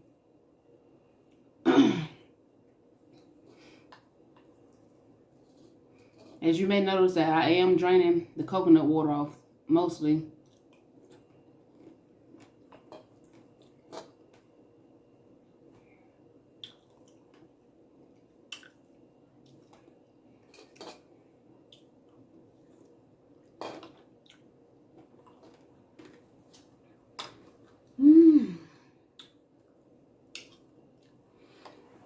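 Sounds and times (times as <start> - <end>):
soft chewing: 2.6 - 6.4, 10.4 - 14.6, 15.4 - 28.0, 29.1 - 32.0.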